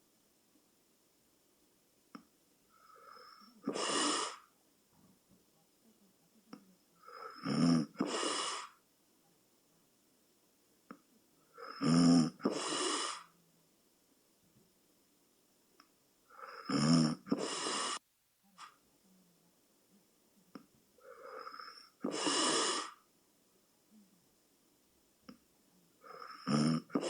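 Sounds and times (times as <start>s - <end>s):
person snoring: 2.8s - 4.4s, 7.0s - 8.8s, 11.5s - 13.3s, 16.3s - 18.0s, 21.0s - 23.0s, 26.0s - 27.0s.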